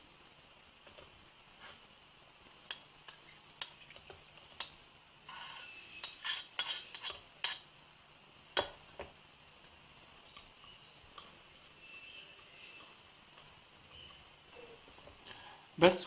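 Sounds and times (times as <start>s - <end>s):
utensil scraping a strainer: 5.2s - 7.7s.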